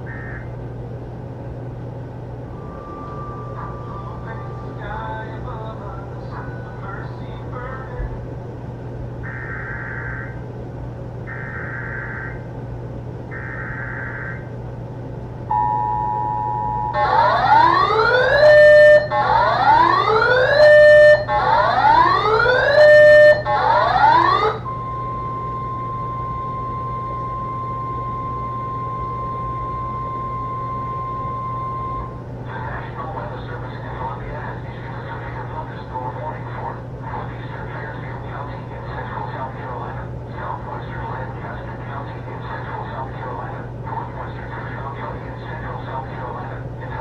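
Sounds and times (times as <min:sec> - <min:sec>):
steady alarm tone: 0:00.0 - 0:00.6, 0:02.2 - 0:05.9, 0:09.2 - 0:10.4, 0:11.2 - 0:12.5, 0:13.3 - 0:14.6, 0:15.5 - 0:32.8
whooping alarm sweeps: 0:02.4 - 0:05.8, 0:11.3 - 0:12.5, 0:13.3 - 0:14.5, 0:15.5 - 0:32.3
two-tone attention signal: 0:02.5 - 0:05.4, 0:15.5 - 0:17.6, 0:24.6 - 0:32.2.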